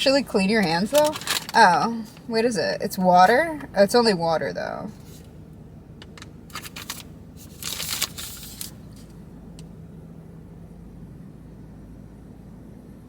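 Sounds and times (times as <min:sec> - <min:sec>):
plastic packet crinkling: 0:00.5 - 0:02.3, 0:06.5 - 0:09.1.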